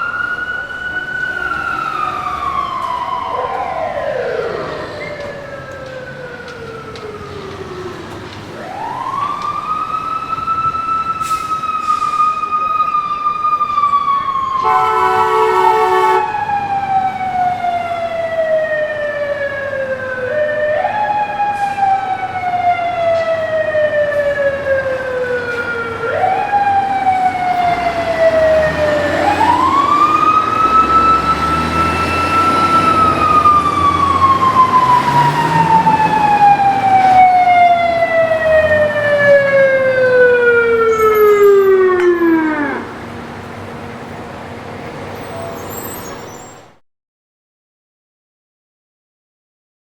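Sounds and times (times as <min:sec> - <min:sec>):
fire truck siren wailing: 0:00.0 - 0:46.6
horn blast: 0:14.6 - 0:16.6.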